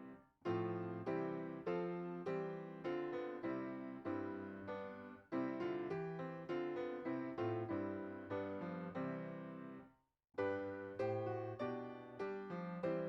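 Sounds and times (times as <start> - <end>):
piano playing slow block chords: 10.4 - 13.0.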